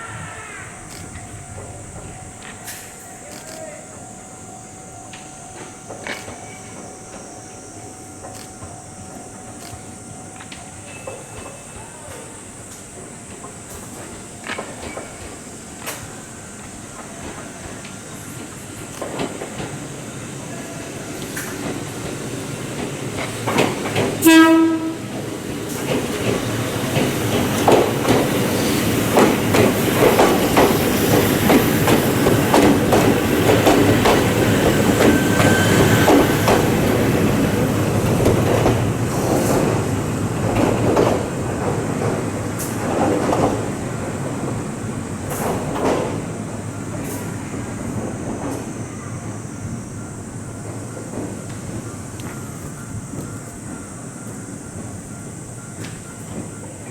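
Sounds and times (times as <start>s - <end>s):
electric train rumbling: 0.0s - 56.9s
train wheels clacking over rail joints: 5.0s - 49.0s
train horn blast: 24.2s - 25.3s.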